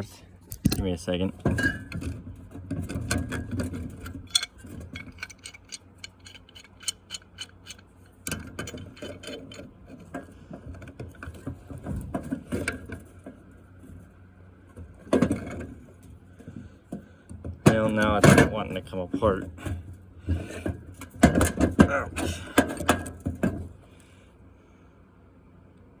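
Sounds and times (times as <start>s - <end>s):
metal clicking and knocking: 0.5s - 13.4s, 16.4s - 23.7s.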